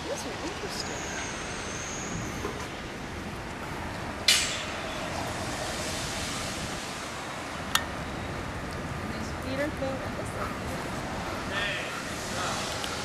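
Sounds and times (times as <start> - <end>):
construction site noise: 0.0 - 13.0
loud hiss burst: 4.3 - 7.5.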